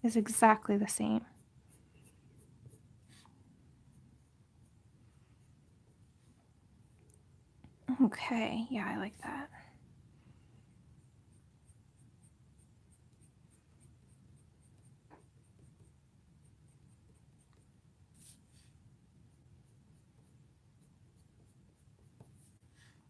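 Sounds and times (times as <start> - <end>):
colored pencil scratching paper: 0.1 - 6.3, 10.8 - 23.0.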